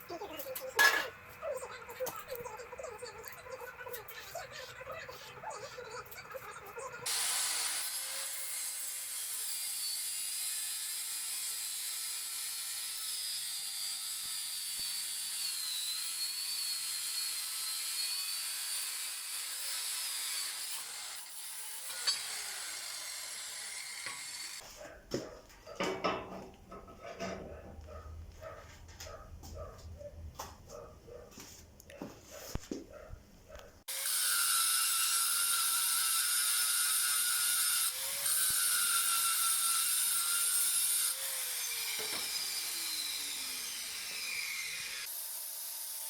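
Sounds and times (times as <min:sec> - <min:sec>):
angle grinder cutting steel: 0:05.7 - 0:24.6, 0:33.9 - 0:46.0.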